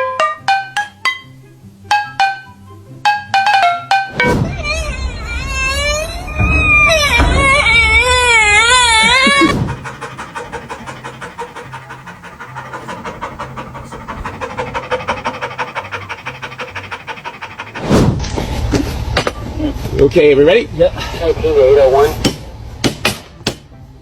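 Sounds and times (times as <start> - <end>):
loud warbling pitched sound: 4.0 - 18.1
rapid rhythmic panting: 7.6 - 18.6.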